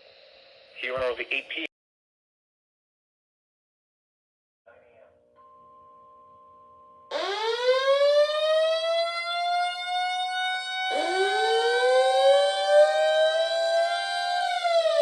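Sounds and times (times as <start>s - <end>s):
civil defense warning sirens wailing: 7.1s - 15.0s.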